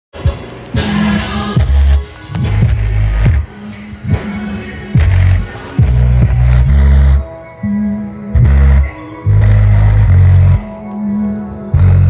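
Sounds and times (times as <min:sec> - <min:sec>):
loud music with a beat: 0:00.1 - 0:12.0
deep bass note: 0:01.6 - 0:03.4, 0:05.0 - 0:07.2, 0:08.4 - 0:10.7, 0:11.8 - 0:12.0.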